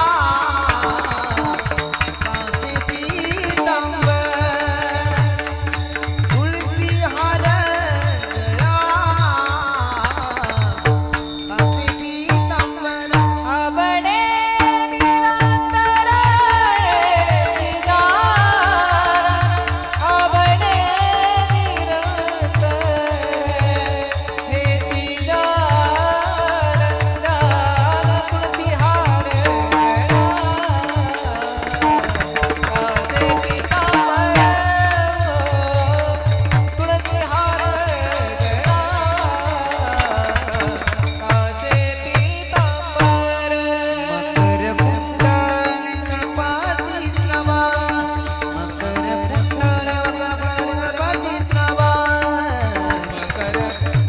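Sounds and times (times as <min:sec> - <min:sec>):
jingling hand cymbals: 0:00.0 - 0:54.0
person singing devotional melody: 0:00.0 - 0:54.0.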